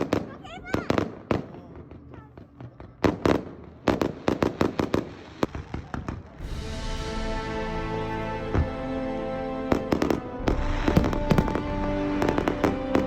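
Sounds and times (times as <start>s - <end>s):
fireworks banging: 0.0s - 6.9s, 8.4s - 9.0s, 9.6s - 13.0s
music with long held chords: 6.4s - 13.0s.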